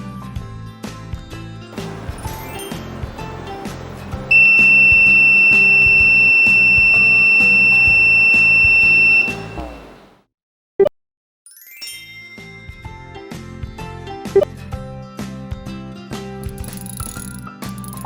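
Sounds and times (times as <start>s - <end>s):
high-pitched fire alarm tone: 4.3s - 10.1s.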